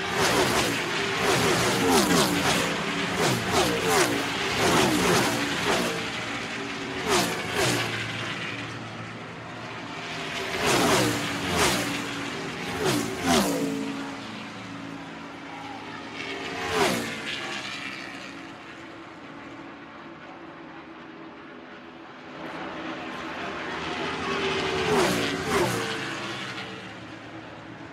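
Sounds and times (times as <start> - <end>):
race cars passing by: 0.0 - 27.9.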